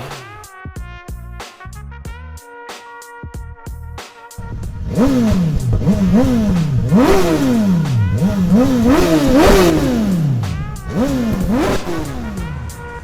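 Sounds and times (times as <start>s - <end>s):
motorcycle engine revving: 0.0s - 0.5s, 4.4s - 13.0s.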